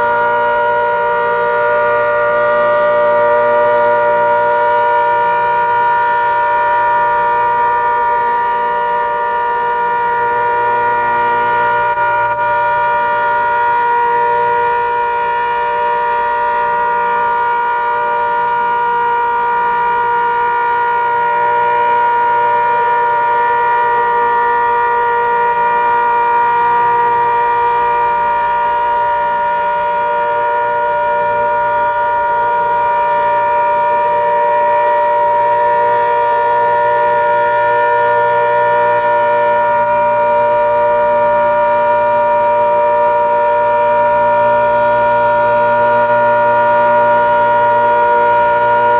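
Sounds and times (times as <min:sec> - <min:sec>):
outdoor warning siren: 0:00.0 - 0:48.9.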